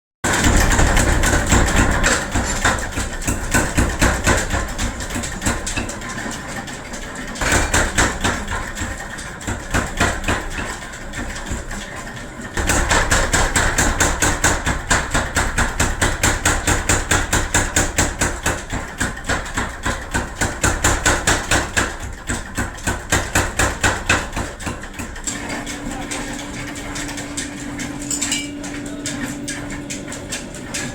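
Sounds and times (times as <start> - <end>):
forging hammer striking metal: 7.4 - 8.6.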